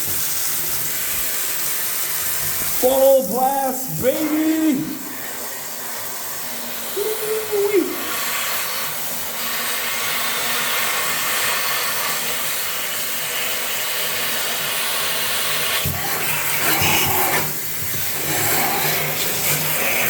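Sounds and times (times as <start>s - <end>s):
blower rushing air: 2.6s - 9.6s.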